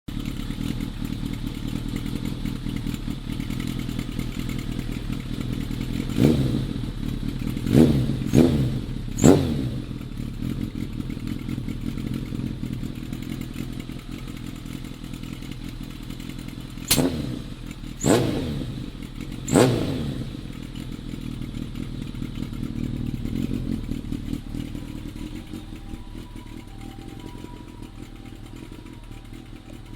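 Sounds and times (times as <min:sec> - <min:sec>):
motorcycle engine idling: 0:00.1 - 0:29.9
motorcycle throttle blips: 0:00.1 - 0:29.9.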